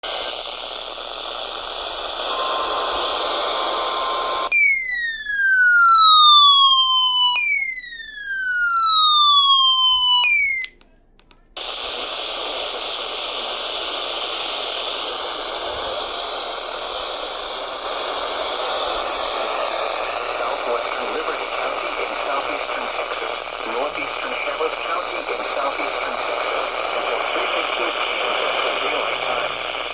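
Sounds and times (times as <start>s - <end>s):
radio static hiss: 0.0s - 5.2s, 11.5s - 29.9s
falling electronic whistles: 4.5s - 10.8s.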